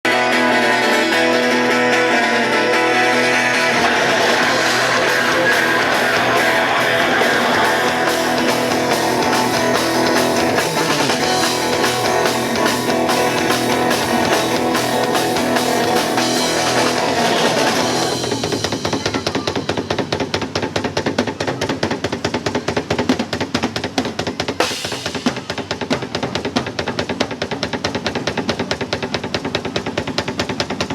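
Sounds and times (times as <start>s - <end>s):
rock guitar: 0.0s - 19.9s
drum kit beat: 0.1s - 30.9s.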